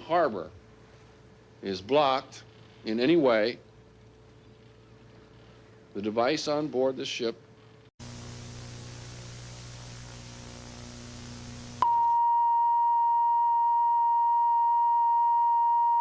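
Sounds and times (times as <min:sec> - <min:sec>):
electrical hum with hiss: 0:00.0 - 0:12.1.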